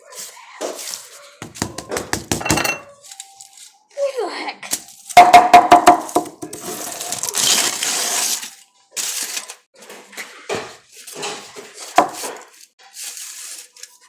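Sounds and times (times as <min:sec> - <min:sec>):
kitchen items clinking and knocking: 0:01.4 - 0:03.2, 0:05.2 - 0:07.1, 0:09.8 - 0:12.6.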